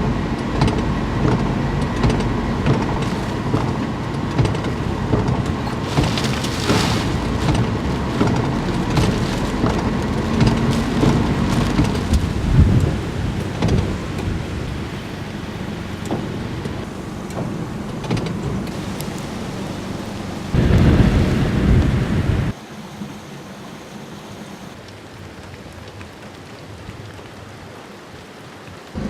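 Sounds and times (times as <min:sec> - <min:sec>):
deep rumbling: 0:00.0 - 0:22.6
heavy rain hissing: 0:00.0 - 0:29.0.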